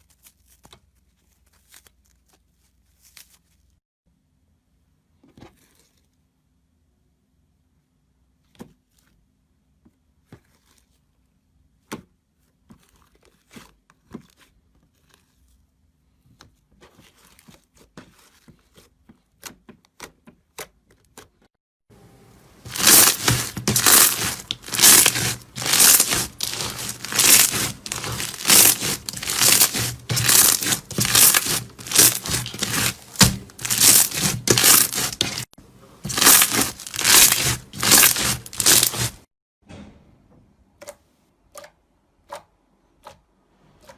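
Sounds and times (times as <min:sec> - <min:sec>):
crunchy material crushed by hand: 0:22.7 - 0:39.3.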